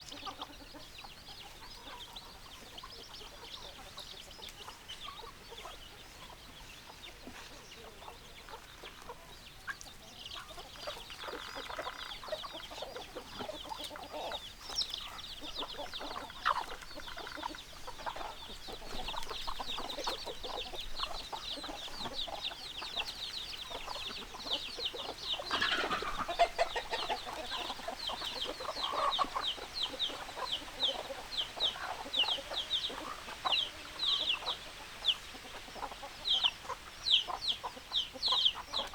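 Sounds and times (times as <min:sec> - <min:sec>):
chickens clucking: 0:00.0 - 0:38.9.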